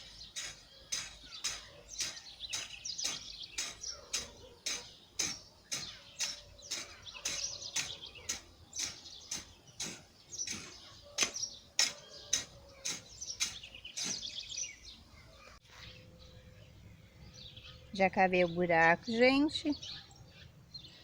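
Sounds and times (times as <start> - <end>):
digging tool striking soil: 0.0 - 14.4
birds chirping: 0.0 - 21.0.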